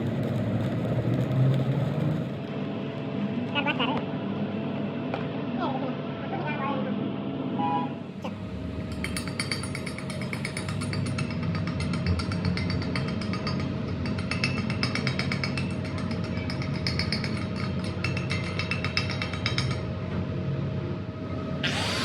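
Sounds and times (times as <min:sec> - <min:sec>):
machine hum: 0:21.4 - 0:22.0.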